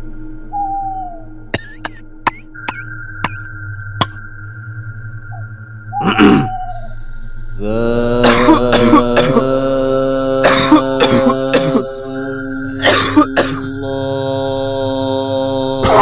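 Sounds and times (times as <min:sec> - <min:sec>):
steady droning tone: 0:00.0 - 0:16.0
person coughing: 0:01.6 - 0:03.4, 0:06.0 - 0:06.6, 0:08.2 - 0:09.4, 0:10.4 - 0:13.7.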